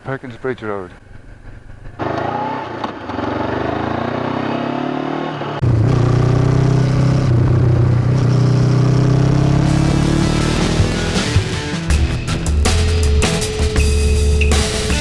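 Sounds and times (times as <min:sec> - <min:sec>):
motorcycle engine accelerating: 0:01.1 - 0:15.0
loud rock music with heavy bass: 0:09.4 - 0:15.0.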